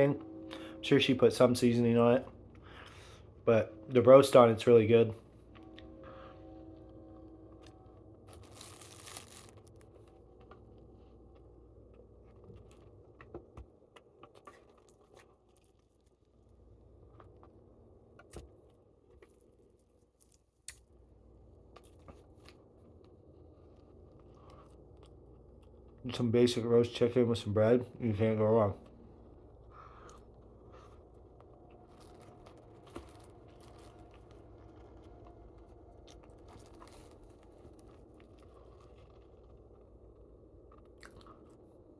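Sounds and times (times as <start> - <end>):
low steady hum: 0.0 - 41.9
eating and handling food: 0.2 - 41.9
food wrapping crinkling and tearing: 7.6 - 11.0, 19.0 - 20.9, 30.0 - 41.7.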